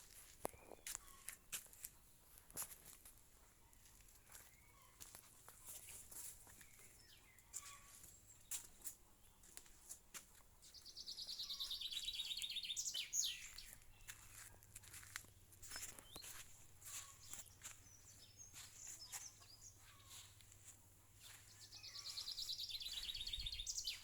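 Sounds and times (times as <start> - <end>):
songbird trill: 0.0 - 1.5, 3.6 - 9.6, 10.6 - 24.0
faint bird chirps: 3.7 - 5.1, 6.5 - 9.5, 10.6 - 14.8, 15.6 - 24.0.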